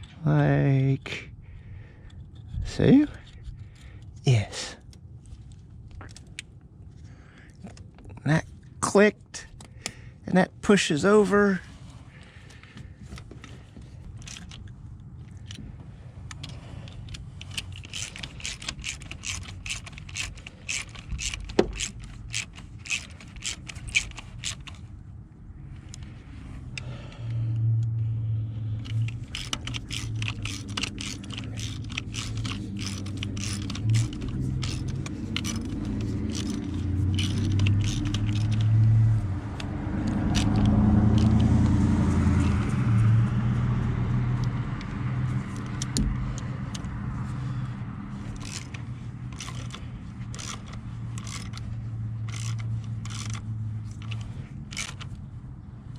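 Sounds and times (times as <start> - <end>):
low vehicle rumble: 11.0 - 55.9
hand tools clicking and jangling: 12.2 - 15.6, 16.2 - 25.0, 28.7 - 43.3, 44.4 - 55.9.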